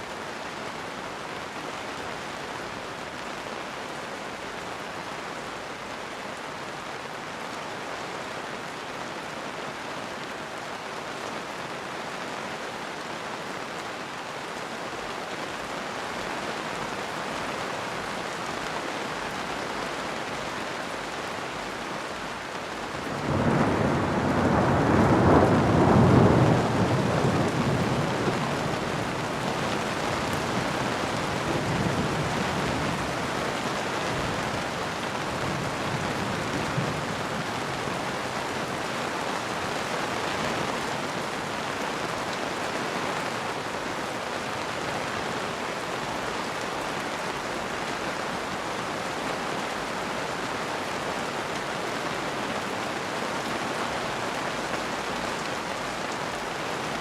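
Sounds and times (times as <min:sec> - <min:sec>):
heavy rain: 0:00.0 - 0:57.0
thunder rumbling: 0:23.0 - 0:33.4.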